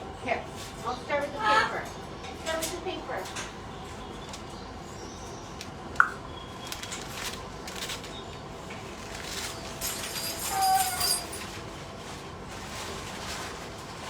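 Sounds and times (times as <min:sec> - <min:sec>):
paper rustling and crinkling: 0:06.6 - 0:14.0.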